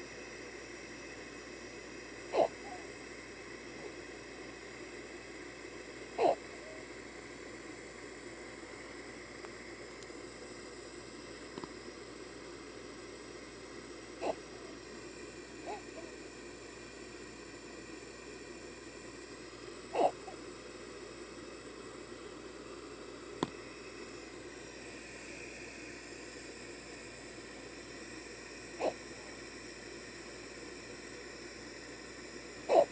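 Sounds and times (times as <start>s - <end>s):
steady hiss: 0.0s - 32.9s
sleeper gasping: 2.3s - 2.8s, 14.2s - 14.4s, 20.0s - 20.3s.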